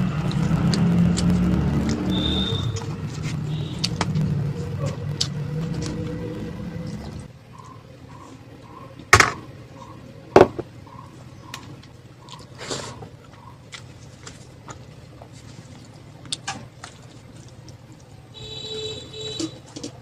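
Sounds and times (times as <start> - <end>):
food crunching: 11.6 - 18.2.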